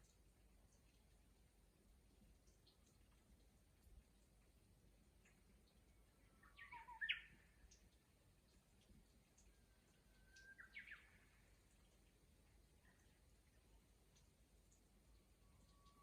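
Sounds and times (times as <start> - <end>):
bird singing whistled phrases: 6.4 - 7.3.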